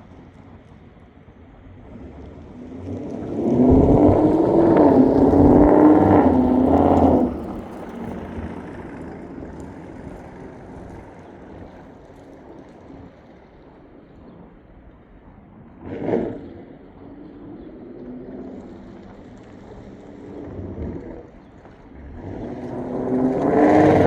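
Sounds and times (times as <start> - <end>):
car engine driving past: 1.8 - 12.3, 18.4 - 24.0.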